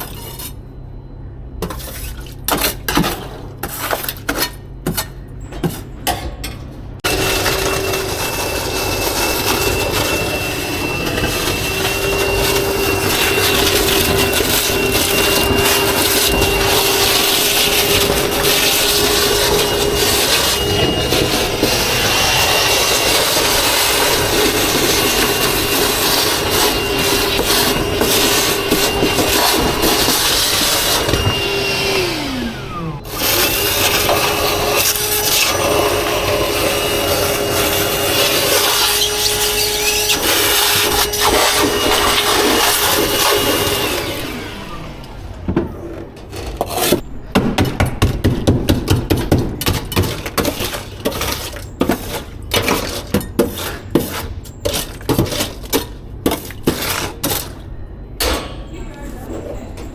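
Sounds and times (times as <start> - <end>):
small electric motor whining: 7.1 - 45.3.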